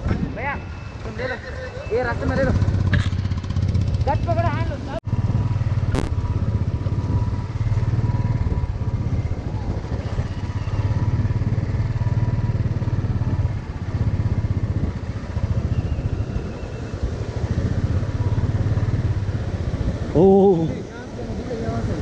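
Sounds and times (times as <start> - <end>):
motorcycle engine running: 2.2 - 20.3.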